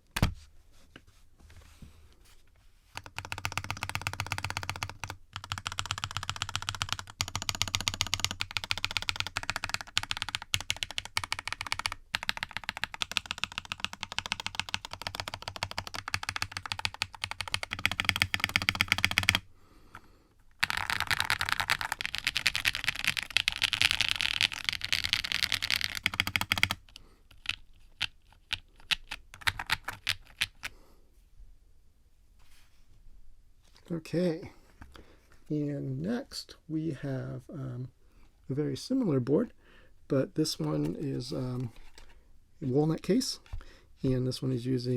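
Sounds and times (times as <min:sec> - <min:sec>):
typing on mechanical keyboard: 0:03.0 - 0:19.4, 0:20.6 - 0:30.7.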